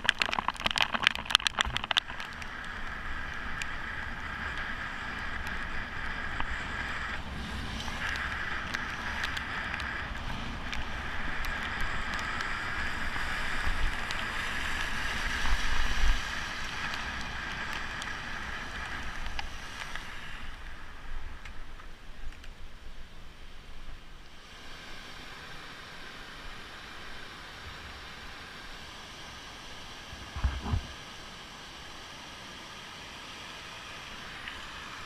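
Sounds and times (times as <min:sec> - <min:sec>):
small ticks: 0:00.0 - 0:07.2, 0:07.8 - 0:15.0
vehicle tyre spray: 0:03.0 - 0:21.0.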